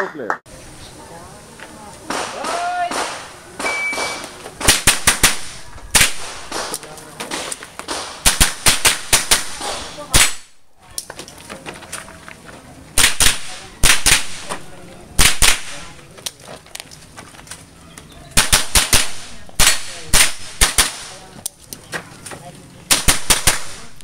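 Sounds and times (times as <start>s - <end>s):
rifle shots: 2.1s - 10.6s, 13.0s - 14.6s, 15.2s - 15.9s, 18.4s - 21.2s, 22.9s - 24.0s.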